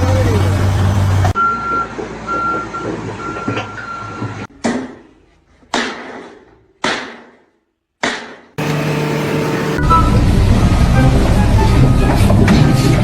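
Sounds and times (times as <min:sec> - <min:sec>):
steady beep: 0:01.4 - 0:04.2
machinery noise: 0:08.6 - 0:13.0.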